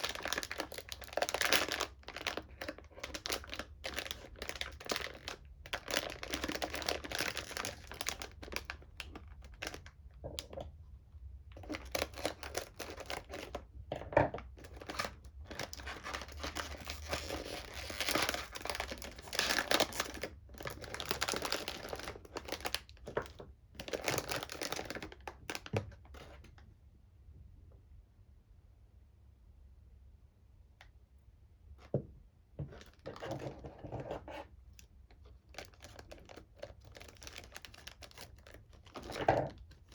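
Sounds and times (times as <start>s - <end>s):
packaging crinkling and tearing: 0.0s - 10.5s, 11.6s - 13.7s, 14.4s - 26.4s, 35.4s - 39.9s.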